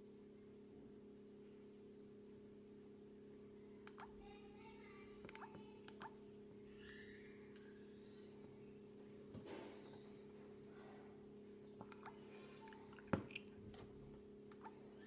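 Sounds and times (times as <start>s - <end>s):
faint sharp clicks: 3.8s - 4.1s.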